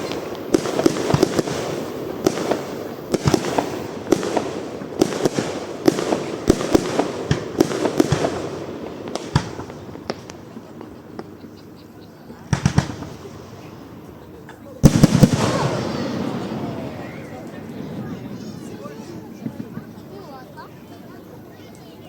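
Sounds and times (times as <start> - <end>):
firework shells bursting: 0.0 - 11.4, 12.4 - 19.9
continuous rumble: 0.0 - 22.0.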